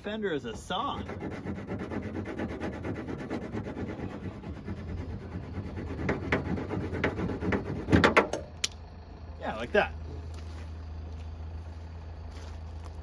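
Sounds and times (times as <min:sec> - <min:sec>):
metal scraping and rasping: 0:00.4 - 0:08.4.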